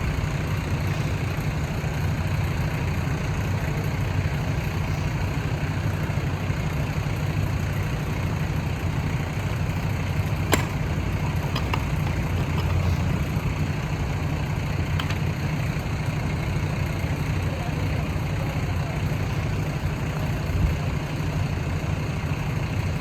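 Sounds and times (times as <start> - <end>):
diesel engine idling: 0.0 - 23.0.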